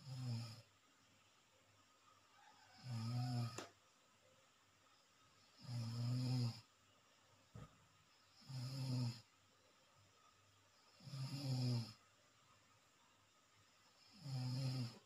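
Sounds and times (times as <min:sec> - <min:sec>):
low pitched snores: 0:00.0 - 0:00.7, 0:02.7 - 0:03.7, 0:05.5 - 0:06.7, 0:08.3 - 0:09.3, 0:10.9 - 0:12.0, 0:14.0 - 0:15.0.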